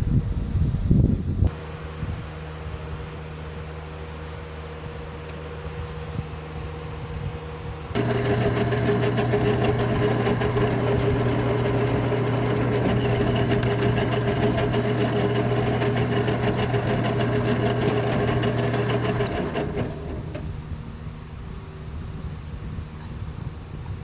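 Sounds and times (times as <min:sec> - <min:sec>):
gear clatter: 0:08.0 - 0:20.5
lathe motor hum: 0:08.0 - 0:20.7.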